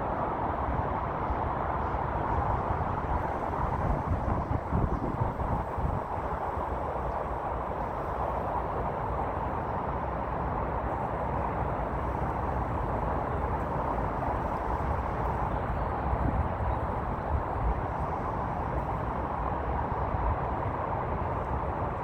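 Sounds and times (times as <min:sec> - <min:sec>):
wind on microphone: 0:00.3 - 0:06.8.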